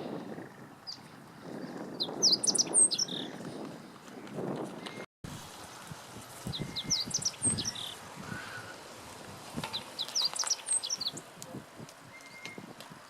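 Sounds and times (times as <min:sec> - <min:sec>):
bird singing high notes: 0:01.9 - 0:03.4, 0:06.5 - 0:08.0, 0:09.7 - 0:11.2, 0:12.1 - 0:12.6.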